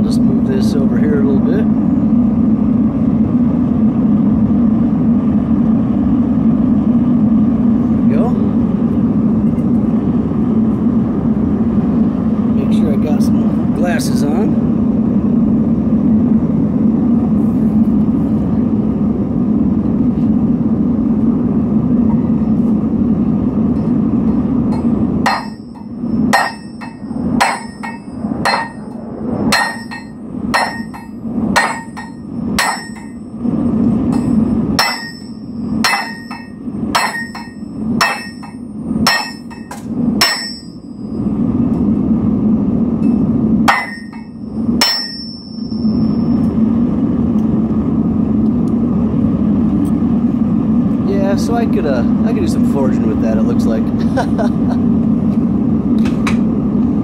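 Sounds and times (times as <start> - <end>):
furnace roar: 0.0 - 57.0
hammer ringing on hot steel: 23.8 - 33.4, 34.1 - 41.3, 43.0 - 46.6.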